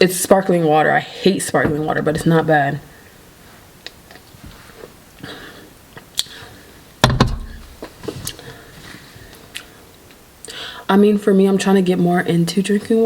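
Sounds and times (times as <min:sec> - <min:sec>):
heavy thump on hard surface: 0:07.0 - 0:07.9.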